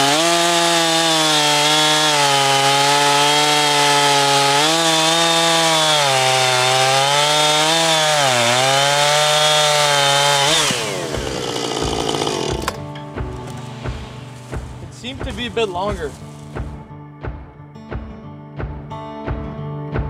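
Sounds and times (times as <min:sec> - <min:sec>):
chainsaw cutting log: 0:00.0 - 0:14.5.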